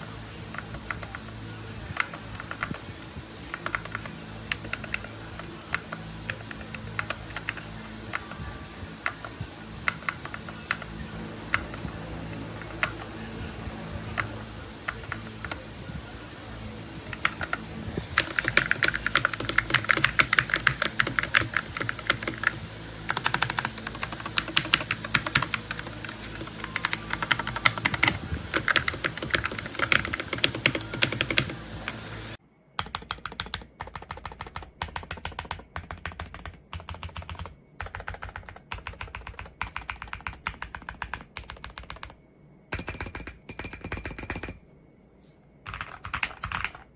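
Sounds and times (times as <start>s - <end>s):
background hum: 0.0s - 46.9s
keyboard key clicks: 32.8s - 42.2s.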